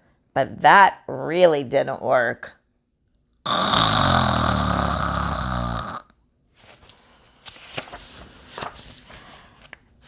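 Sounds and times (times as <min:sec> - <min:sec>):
person imitating a snore: 0:03.5 - 0:06.1.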